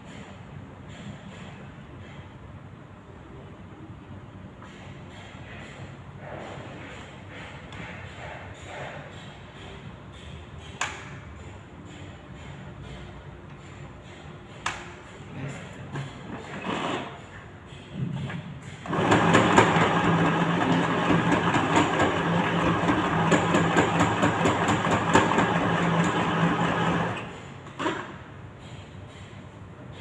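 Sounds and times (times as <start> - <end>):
sewing machine running: 18.8 - 27.4.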